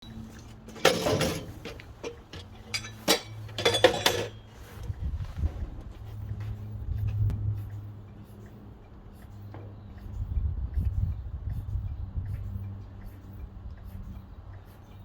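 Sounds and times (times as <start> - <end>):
steady low hum: 0.0 - 15.0
metal clinking and clattering: 0.4 - 4.6.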